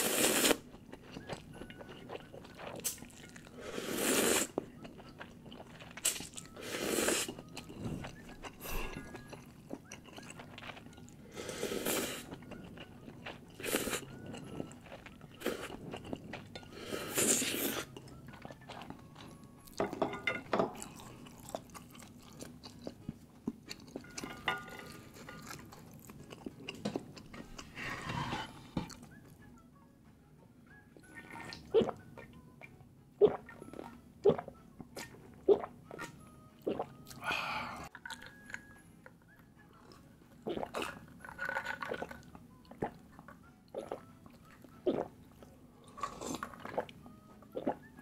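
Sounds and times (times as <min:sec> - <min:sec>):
noodle slurping: 0:00.0 - 0:01.3, 0:02.7 - 0:04.6, 0:13.5 - 0:18.0, 0:36.6 - 0:36.9, 0:44.8 - 0:45.1
wet chewing and mouth clicks: 0:00.4 - 0:03.6, 0:04.5 - 0:06.6, 0:07.2 - 0:11.2, 0:11.9 - 0:19.8, 0:20.8 - 0:27.7, 0:31.0 - 0:37.2, 0:39.8 - 0:47.9.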